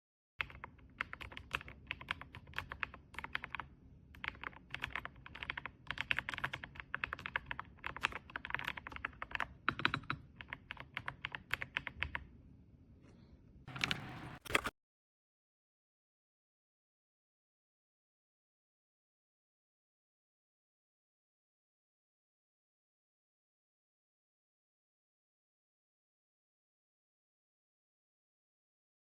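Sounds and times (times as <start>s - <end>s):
mechanical keyboard typing: 0.4s - 12.3s, 13.7s - 14.7s.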